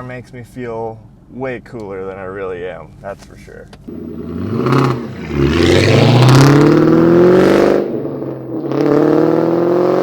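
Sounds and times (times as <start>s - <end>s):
car engine revving: 3.9s - 10.0s.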